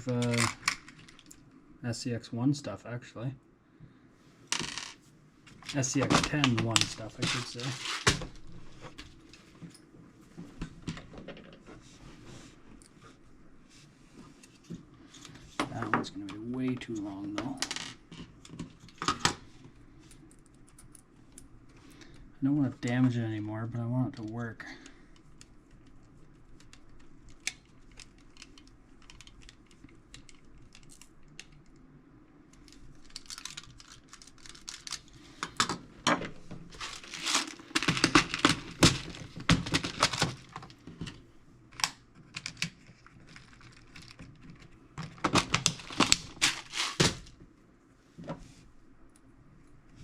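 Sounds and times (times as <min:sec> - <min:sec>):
scraping and rustling: 0:04.6 - 0:09.7, 0:36.4 - 0:40.8, 0:45.4 - 0:47.3.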